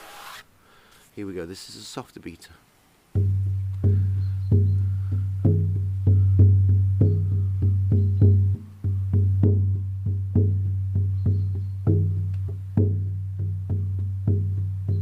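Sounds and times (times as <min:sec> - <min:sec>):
frame drum booming: 0:03.2 - 0:15.0.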